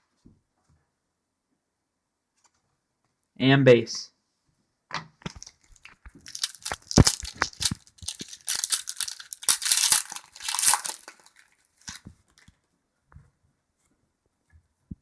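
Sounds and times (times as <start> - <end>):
cards clicking: 5.3 - 12.1
wrapper tearing and crinkling: 5.3 - 12.1.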